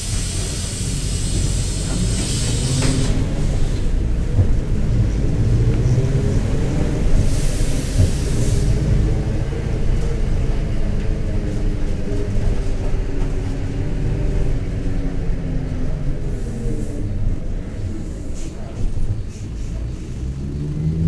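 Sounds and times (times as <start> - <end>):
hiss: 0.0 - 3.9, 7.2 - 9.0
bus diesel engine running: 0.0 - 21.0.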